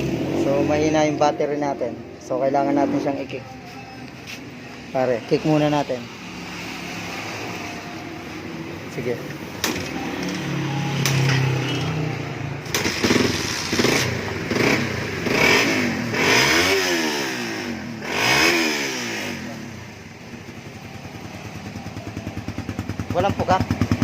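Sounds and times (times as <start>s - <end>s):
motorcycle engine revving: 0.0s - 3.4s, 5.4s - 24.0s
motorcycle idling: 7.5s - 15.3s, 19.2s - 24.0s.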